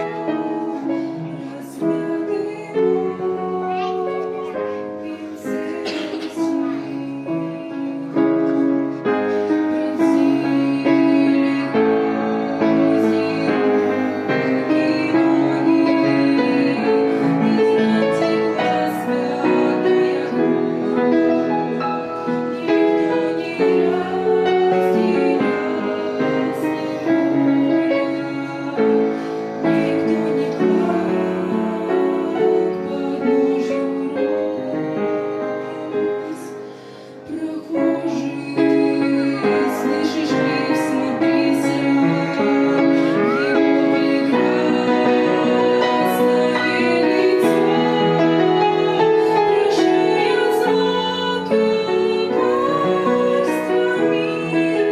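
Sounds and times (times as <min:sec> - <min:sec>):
piano accompaniment: 0:00.0 - 0:54.9
woman singing: 0:00.0 - 0:54.9.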